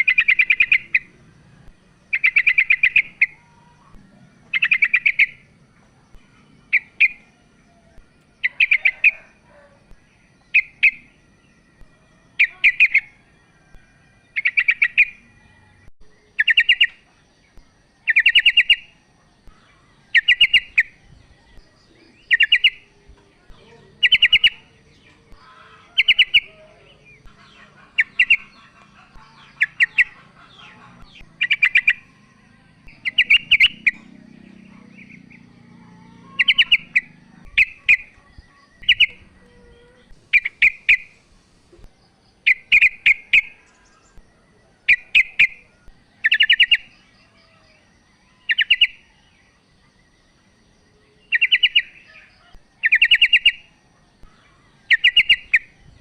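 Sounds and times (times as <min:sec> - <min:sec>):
bird chattering calls: 0:00.0 - 0:01.3, 0:02.1 - 0:05.5, 0:06.2 - 0:07.3, 0:21.6 - 0:32.3, 0:32.9 - 0:41.2, 0:42.4 - 0:44.2, 0:51.3 - 0:53.7.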